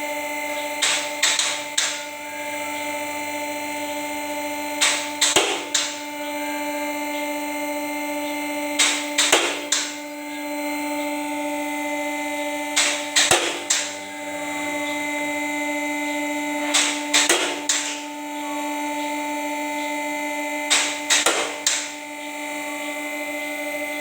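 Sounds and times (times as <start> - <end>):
steady hum: 0.0 - 24.0
sharp clicks or knocks: 0.8 - 2.0, 4.8 - 6.0, 8.8 - 9.9, 12.8 - 13.9, 16.7 - 18.0, 20.7 - 21.9.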